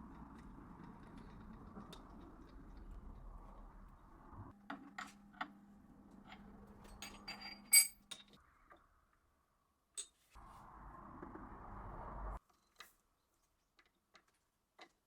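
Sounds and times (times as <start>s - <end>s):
metal parts clicking and clinking: 6.8s - 8.3s
sharp ringing metallic clink: 7.4s - 8.0s.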